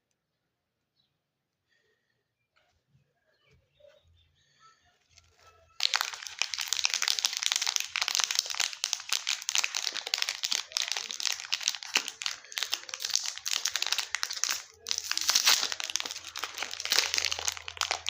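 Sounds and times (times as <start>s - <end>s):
candy wrappers crinkling: 5.2s - 18.0s.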